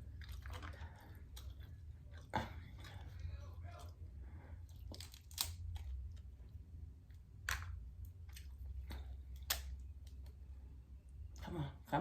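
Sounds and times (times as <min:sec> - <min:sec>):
low steady hum: 0:00.0 - 0:12.0
crab shell cracking: 0:04.8 - 0:06.2, 0:07.4 - 0:10.4.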